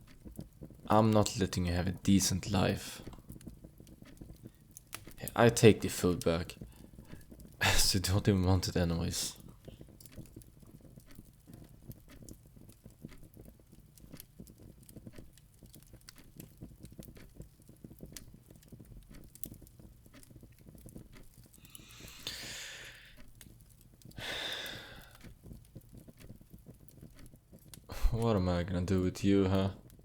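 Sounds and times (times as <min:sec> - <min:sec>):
faint crackling: 0:00.0 - 0:30.0
man sighing exhalations: 0:21.9 - 0:23.1, 0:24.2 - 0:25.1.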